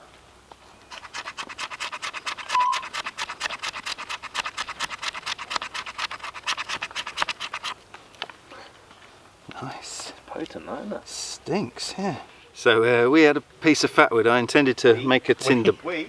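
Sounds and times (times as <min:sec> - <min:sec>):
blade scraping wood: 0:00.8 - 0:07.8.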